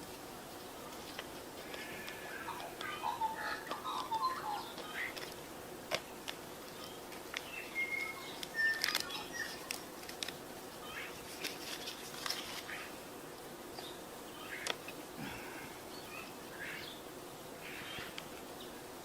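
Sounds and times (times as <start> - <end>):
bird chirps: 6.8 - 9.7.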